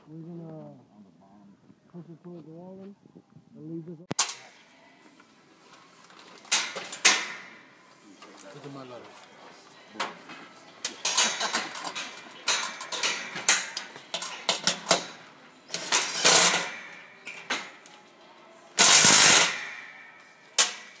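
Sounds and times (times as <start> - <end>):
metal hardware clanking: 10.8 - 17.9.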